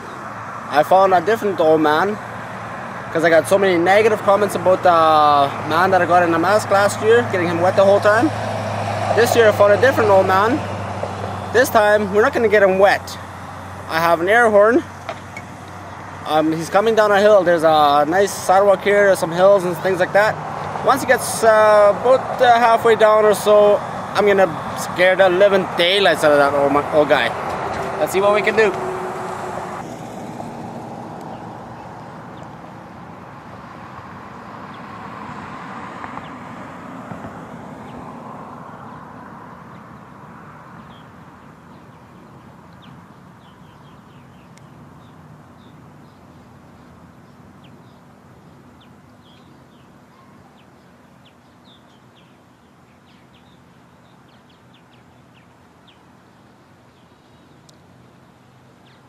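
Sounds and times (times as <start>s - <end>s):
passing vehicle road noise: 0.0s - 51.4s.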